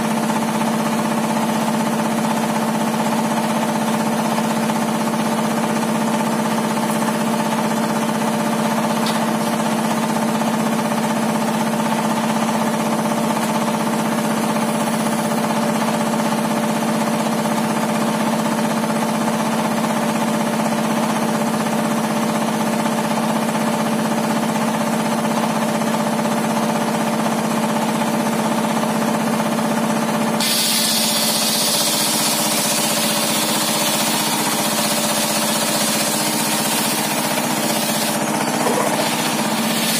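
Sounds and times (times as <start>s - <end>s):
table saw humming: 30.7s - 39.9s.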